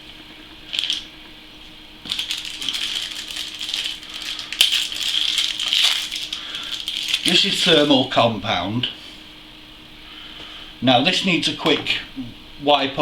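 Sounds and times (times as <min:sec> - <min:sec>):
small items rattling and crinkling: 0:00.7 - 0:01.1, 0:02.0 - 0:07.8.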